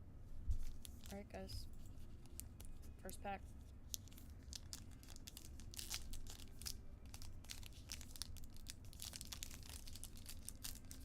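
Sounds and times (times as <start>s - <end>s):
wrapper tearing and crinkling: 0.6s - 1.2s, 3.9s - 11.0s.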